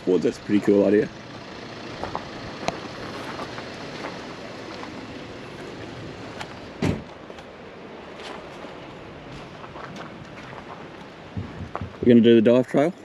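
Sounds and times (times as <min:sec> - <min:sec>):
car engine running: 0:00.0 - 0:07.2
loud thump: 0:06.8 - 0:07.1.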